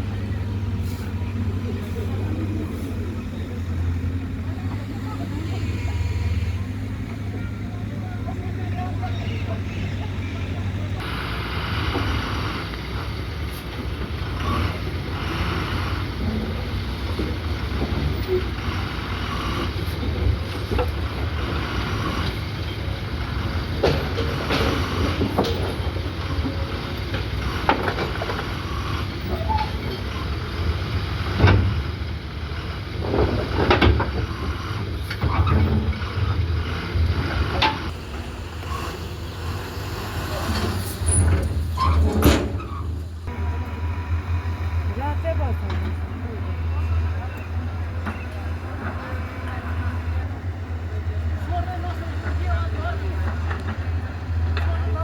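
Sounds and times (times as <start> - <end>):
low engine-like rumble: 0.0 - 55.0
knocks and clanks: 40.3 - 43.3.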